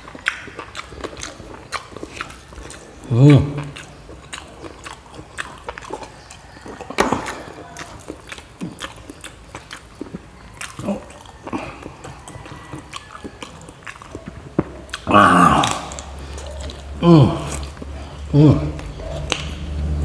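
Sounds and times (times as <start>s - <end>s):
person chewing noisily: 0.0s - 20.0s.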